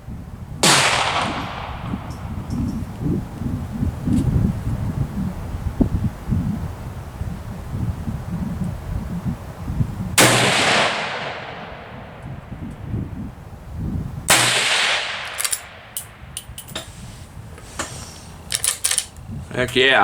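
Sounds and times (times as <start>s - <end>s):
rifle shots: 0.6s - 1.9s, 10.2s - 12.2s, 14.3s - 16.4s
rifle lever action clicks: 15.2s - 16.9s, 17.6s - 19.2s.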